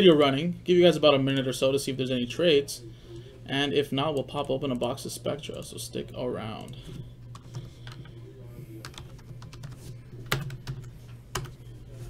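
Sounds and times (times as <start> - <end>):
typing on computer keyboard: 8.8 - 11.6.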